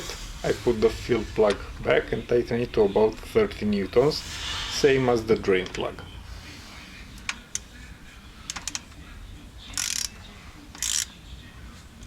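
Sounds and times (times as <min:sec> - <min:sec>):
short hissing bursts: 0:00.0 - 0:01.5, 0:04.1 - 0:05.3
ratchet wrench clicking: 0:08.5 - 0:08.8, 0:09.7 - 0:10.1, 0:10.8 - 0:11.1.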